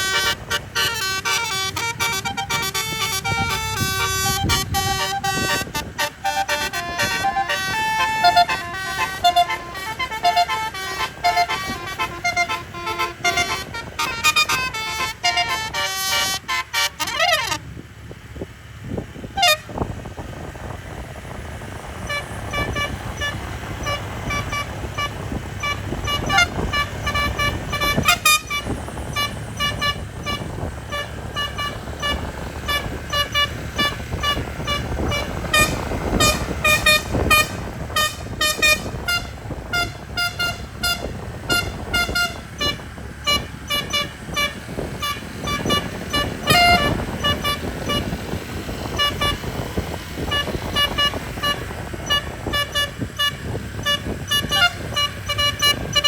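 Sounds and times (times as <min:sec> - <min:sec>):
bus horn melody: 0:00.0 - 0:17.8, 0:19.2 - 0:56.0
low rumble: 0:17.7 - 0:56.0.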